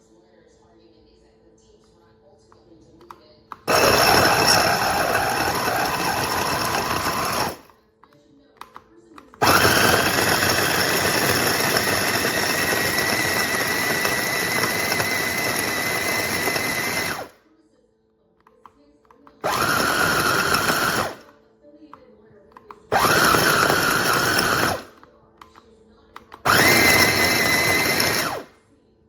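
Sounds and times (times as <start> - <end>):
food chopper motor whining: 3.7 - 7.7, 9.4 - 17.4, 19.4 - 21.3, 22.9 - 25.0, 26.3 - 28.5.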